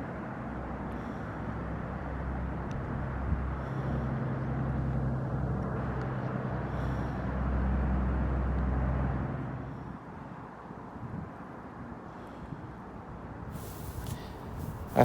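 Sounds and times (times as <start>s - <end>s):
passing vehicle engine hum: 0.0s - 10.0s, 13.3s - 15.0s
outdoor background noise: 0.0s - 15.0s.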